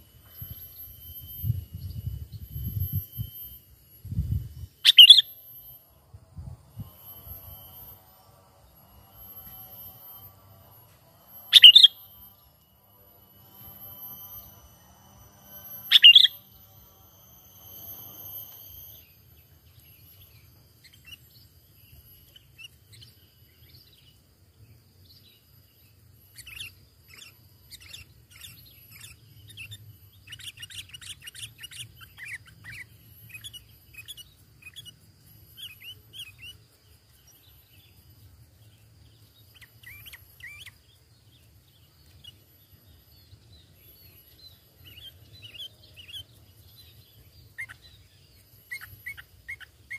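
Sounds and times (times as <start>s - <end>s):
bulbuls chirping and whistling: 0.0s - 5.7s, 11.4s - 12.4s, 13.4s - 24.1s, 25.9s - 38.0s, 38.6s - 49.9s
faint low hum: 0.0s - 49.9s.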